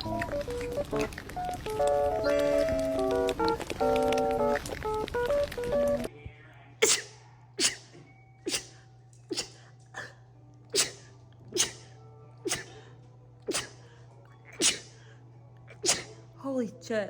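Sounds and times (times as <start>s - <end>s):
person sneezing rapidly: 6.8s - 10.1s, 10.7s - 12.8s, 13.5s - 13.8s, 14.6s - 15.0s, 15.8s - 16.2s.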